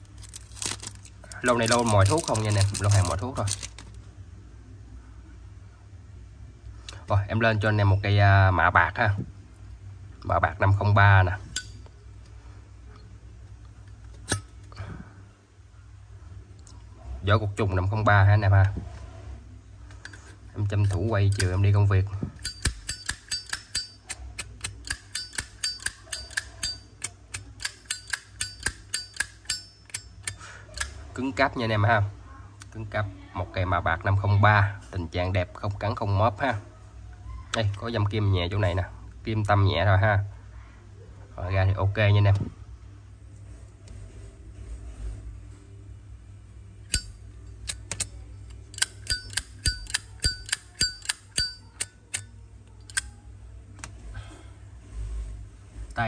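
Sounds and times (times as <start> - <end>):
lighter lid clinking: 22.4 - 30.9, 48.8 - 51.6.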